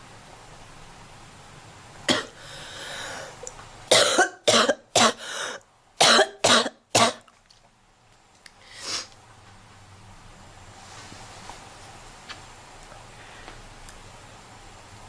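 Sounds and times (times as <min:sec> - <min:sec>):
girl coughing: 0:02.1 - 0:02.4, 0:03.9 - 0:05.4, 0:06.0 - 0:07.3
breath: 0:02.4 - 0:03.4, 0:05.2 - 0:05.6, 0:08.6 - 0:09.2, 0:13.1 - 0:13.6.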